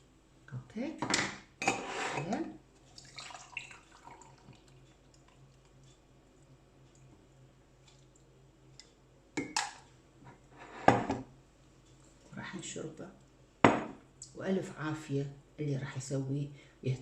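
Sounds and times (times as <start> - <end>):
liquid dripping and trickling: 2.9 - 5.9, 7.8 - 8.9.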